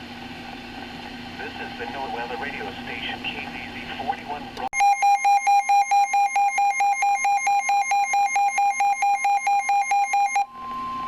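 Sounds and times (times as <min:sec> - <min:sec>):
rapid alarm beeping: 0:04.8 - 0:11.0
steady alarm tone: 0:04.8 - 0:11.0.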